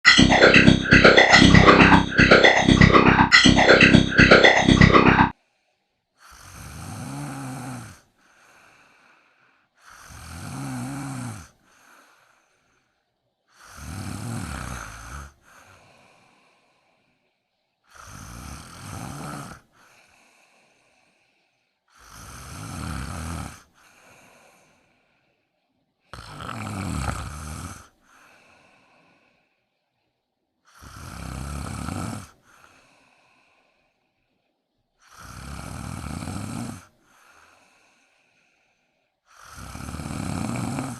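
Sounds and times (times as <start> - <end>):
faint breath: 8.2 - 10.0, 11.6 - 13.0, 15.3 - 17.5, 23.7 - 25.7, 28.0 - 30.1, 32.4 - 34.6, 36.9 - 39.3
woman snoring: 26.2 - 27.7, 30.8 - 32.4, 35.1 - 36.8, 39.4 - 40.9.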